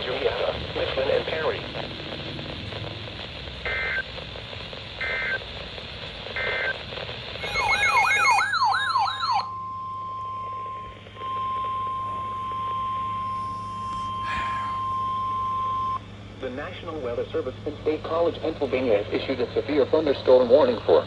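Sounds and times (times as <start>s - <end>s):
digital data chirps: 7.4s - 16.0s
electronic warbling siren: 7.4s - 16.0s
steady alarm tone: 7.4s - 16.0s.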